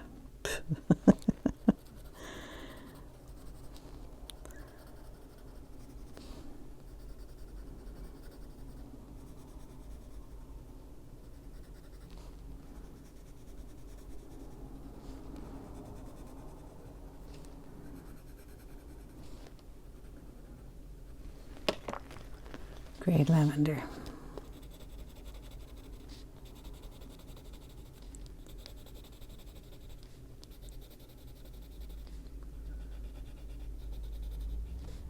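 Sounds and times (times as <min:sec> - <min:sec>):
pencil scratching on paper: 0:01.7 - 0:04.0, 0:04.6 - 0:10.5, 0:11.2 - 0:21.2, 0:24.4 - 0:35.0.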